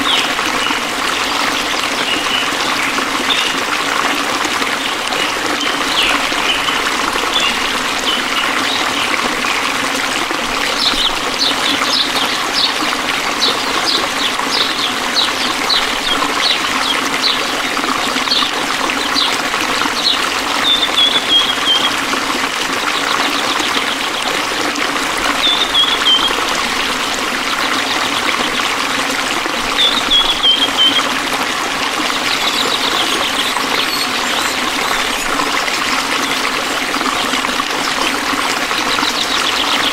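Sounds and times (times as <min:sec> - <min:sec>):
stream trickling: 0:00.0 - 0:39.9.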